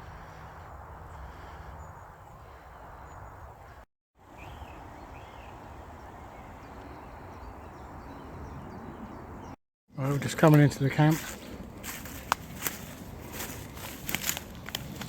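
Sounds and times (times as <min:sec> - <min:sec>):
bird chirps: 0:04.3 - 0:09.6.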